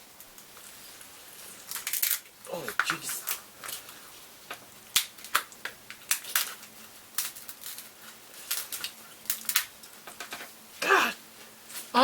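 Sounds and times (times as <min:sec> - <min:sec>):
crab shell cracking by hand: 0:04.9 - 0:09.9.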